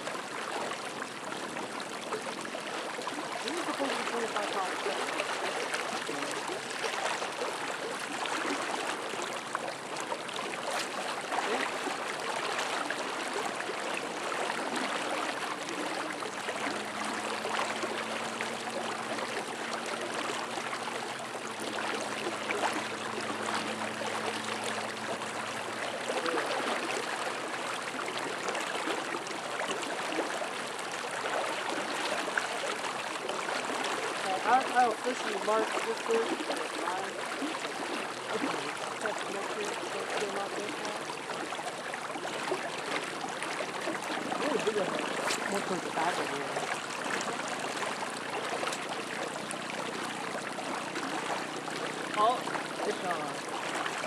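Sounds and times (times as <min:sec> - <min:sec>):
rushing churning river water: 0:00.0 - 0:54.0.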